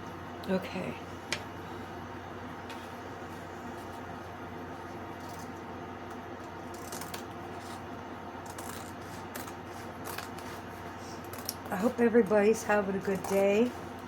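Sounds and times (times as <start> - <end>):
steady low hum: 0.0 - 14.0
scissors snipping: 6.7 - 7.8.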